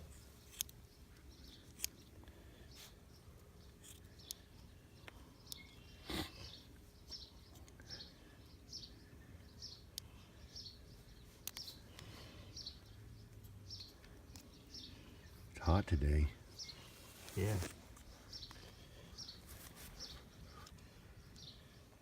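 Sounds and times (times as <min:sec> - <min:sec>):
bird chirping: 0:00.0 - 0:22.0
rustling noise: 0:16.8 - 0:18.2, 0:19.4 - 0:20.3.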